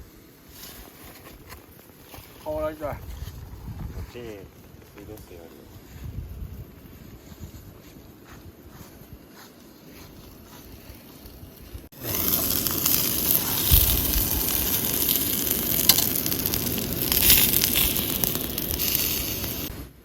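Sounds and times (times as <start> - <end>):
food sizzling in a pan: 11.8 - 19.7.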